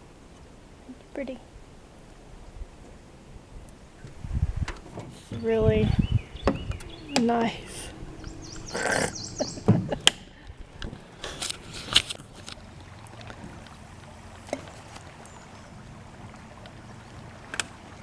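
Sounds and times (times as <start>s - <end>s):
water: 0.0s - 18.0s
wind: 0.0s - 18.0s
knocks and clicks of gear in boat: 4.0s - 5.7s, 6.4s - 8.7s, 9.4s - 13.8s, 14.4s - 15.3s, 16.2s - 18.0s.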